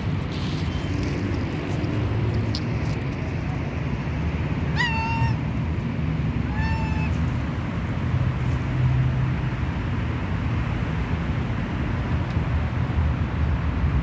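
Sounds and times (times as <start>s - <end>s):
cat meowing: 4.7s - 5.4s, 6.4s - 7.2s.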